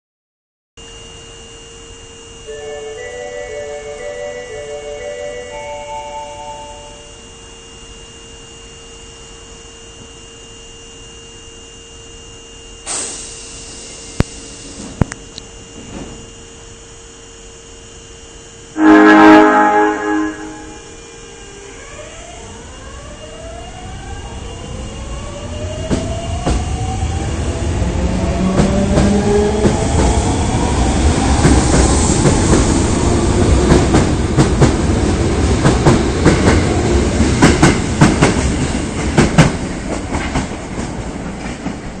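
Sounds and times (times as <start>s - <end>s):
train motor whine rising in pitch: 0.8s - 40.5s.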